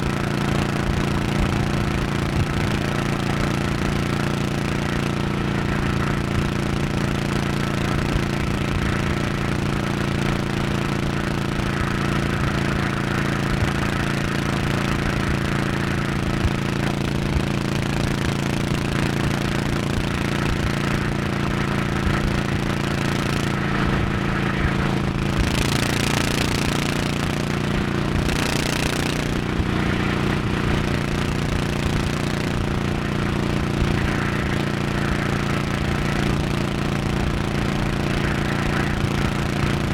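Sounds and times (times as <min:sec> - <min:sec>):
motorcycle engine at highway speed: 0:00.0 - 0:39.9.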